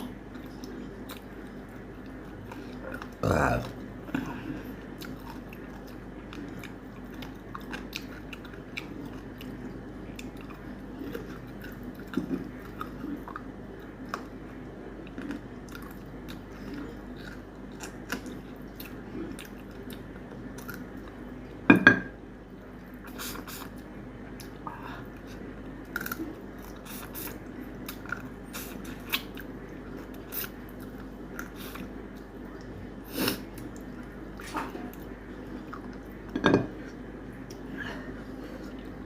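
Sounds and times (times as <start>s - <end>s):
close chewing with mouth smacks: 4.7s - 14.4s, 15.0s - 21.2s, 22.8s - 36.2s.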